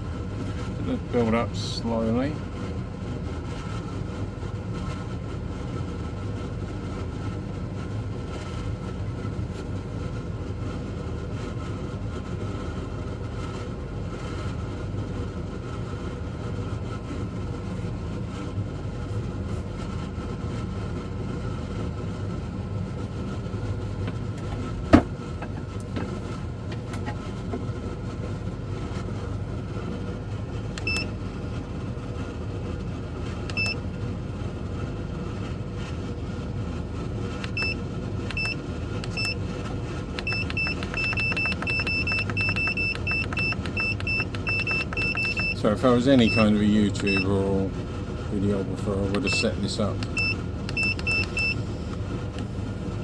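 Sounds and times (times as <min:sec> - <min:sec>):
air conditioner humming: 0:00.0 - 0:53.0
short high beeps: 0:40.2 - 0:45.6, 0:46.2 - 0:47.3.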